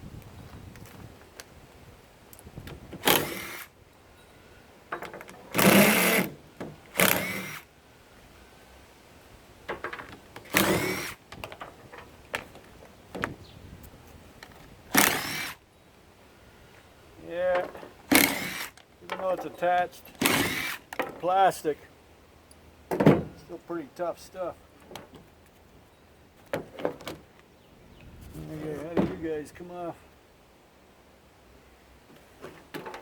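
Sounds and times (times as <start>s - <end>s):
power drill motor whine: 3.0s - 3.7s, 5.5s - 6.3s, 6.9s - 7.7s, 10.5s - 11.2s, 14.9s - 15.6s, 18.1s - 18.8s, 20.2s - 20.8s.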